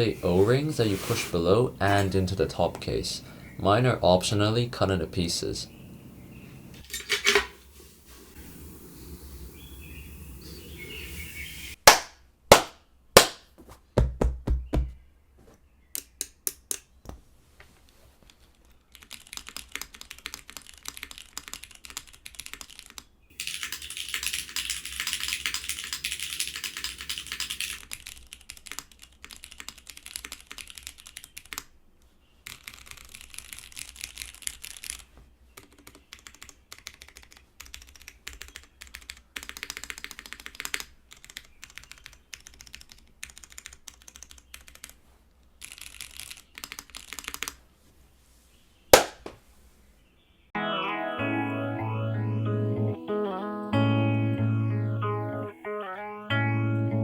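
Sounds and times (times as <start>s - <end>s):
mechanical keyboard typing: 18.9s - 31.7s, 32.5s - 45.0s, 45.6s - 47.6s.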